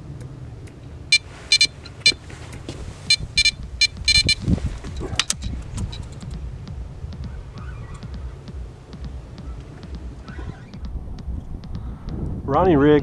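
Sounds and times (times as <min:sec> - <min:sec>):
wind rumbling on microphone: 0:00.0 - 0:13.0
bite alarm beeping: 0:01.0 - 0:10.6.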